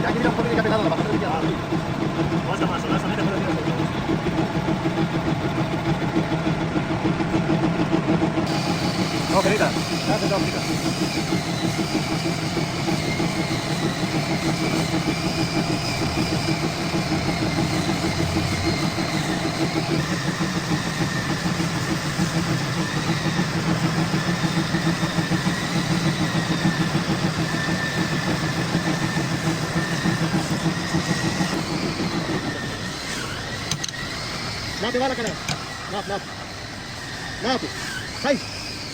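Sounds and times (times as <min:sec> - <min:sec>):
lathe pulsing drone: 0:00.0 - 0:38.9
thin wavering whine: 0:08.5 - 0:32.8.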